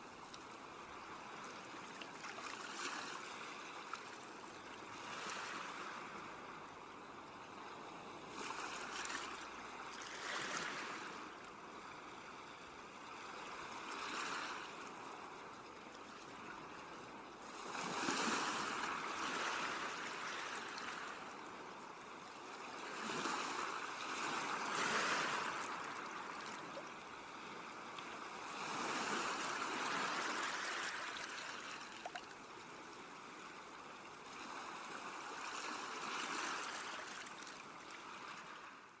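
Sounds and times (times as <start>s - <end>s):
sea waves washing onto shore: 17.4s - 33.2s.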